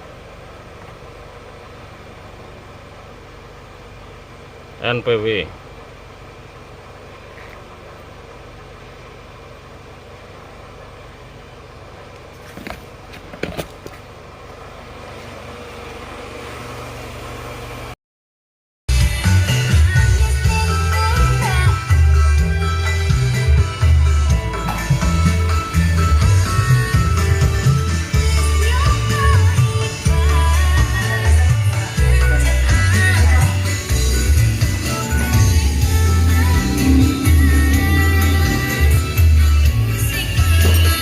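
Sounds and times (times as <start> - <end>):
car engine idling: 0.0 - 17.9, 18.9 - 41.0
pop song singing: 18.9 - 41.0
pulsing bass line: 18.9 - 41.0.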